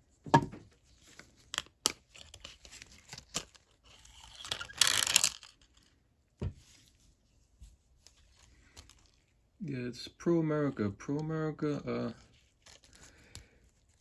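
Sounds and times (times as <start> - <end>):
knock: 0.3 - 0.6
packaging crinkling and clicking: 1.2 - 5.9, 12.6 - 14.0
packaging tearing: 2.2 - 5.6.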